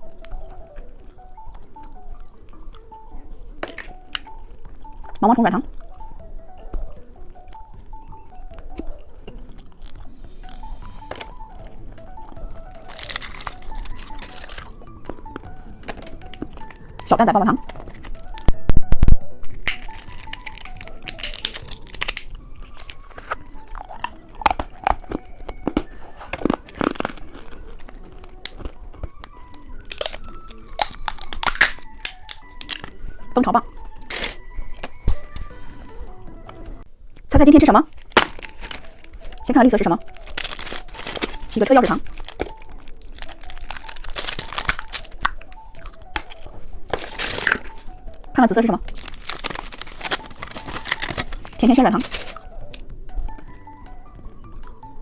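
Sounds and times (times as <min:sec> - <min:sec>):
crunching hard candy: 0:00.0 - 0:05.1, 0:05.7 - 0:18.5, 0:19.5 - 0:35.5, 0:37.9 - 0:53.6
plastic wrapper crinkling: 0:03.6 - 0:04.4, 0:09.6 - 0:18.5, 0:19.5 - 0:33.0, 0:37.9 - 0:52.9.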